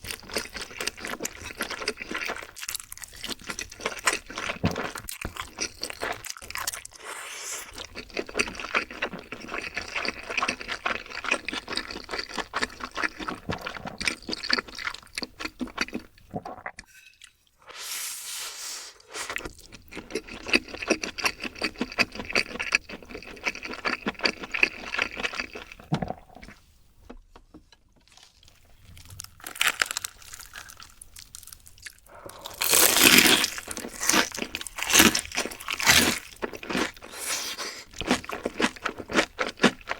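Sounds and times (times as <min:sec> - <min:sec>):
crunching fried chicken: 0:00.0 - 0:07.1, 0:07.7 - 0:16.1, 0:28.1 - 0:39.9.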